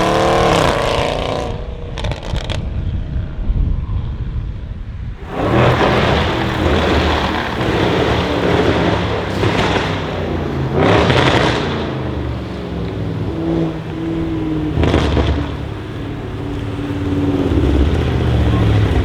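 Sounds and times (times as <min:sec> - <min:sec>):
car engine revving: 0:05.2 - 0:19.0.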